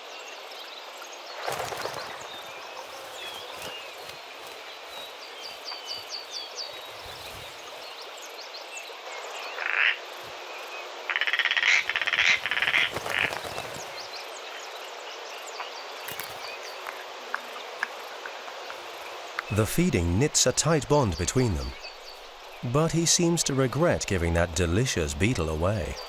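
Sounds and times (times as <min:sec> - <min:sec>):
small birds chirping: 0:00.0 - 0:10.9, 0:11.6 - 0:26.0
bird harsh rattling calls: 0:11.1 - 0:14.2.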